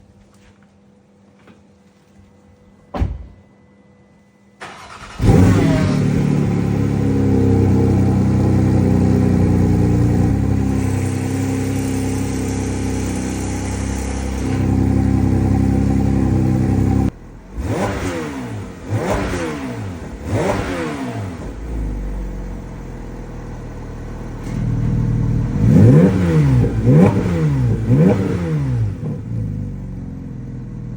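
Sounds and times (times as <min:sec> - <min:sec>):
thump: 0:02.9 - 0:03.4
car engine starting and revving: 0:04.6 - 0:30.9.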